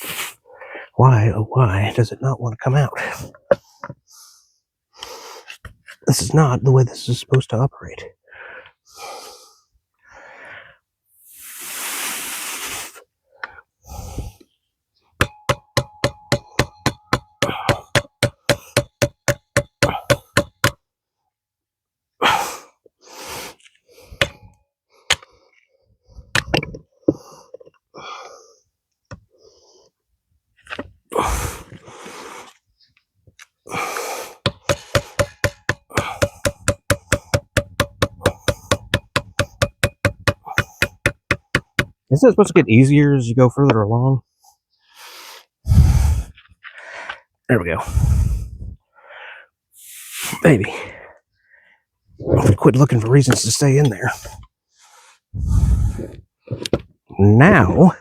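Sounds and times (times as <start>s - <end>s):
hammer tapping on steel: 15.2s - 20.8s, 34.4s - 42.0s.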